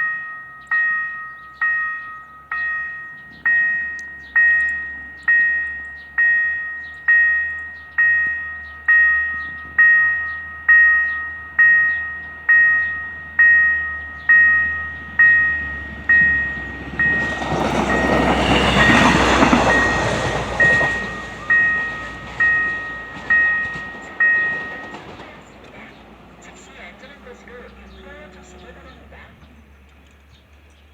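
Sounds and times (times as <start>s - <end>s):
railroad crossing bell ringing: 0.0s - 29.9s
rail car rumbling: 0.0s - 30.9s.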